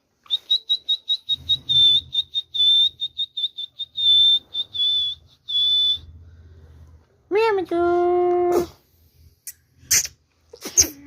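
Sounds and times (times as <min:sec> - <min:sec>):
high whistle notes: 0:00.3 - 0:06.2.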